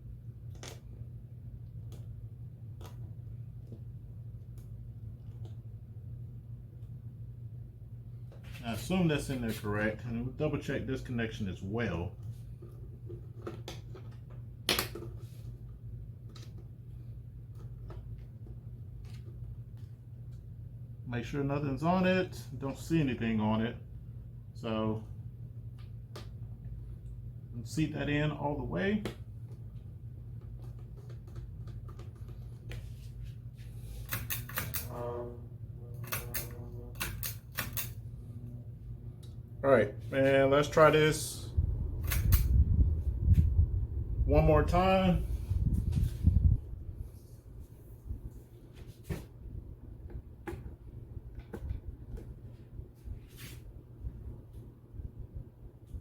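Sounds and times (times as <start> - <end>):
steady low hum: 0.0 - 56.0.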